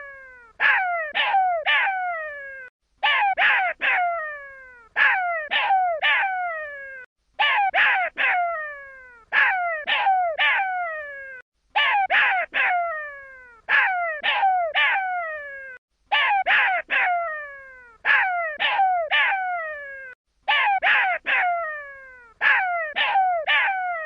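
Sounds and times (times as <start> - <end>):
jackal pup calling: 0.0 - 4.0, 13.7 - 17.2, 18.0 - 21.6, 22.4 - 24.0.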